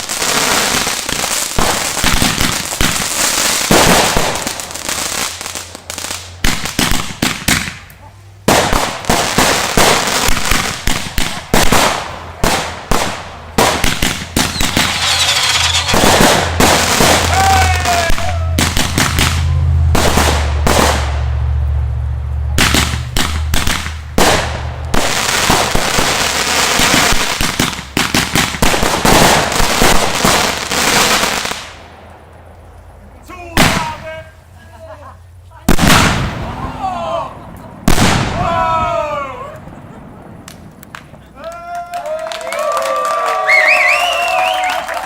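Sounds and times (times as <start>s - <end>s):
firecrackers crackling: 0.0s - 45.0s
firework shell bursts: 8.5s - 17.4s.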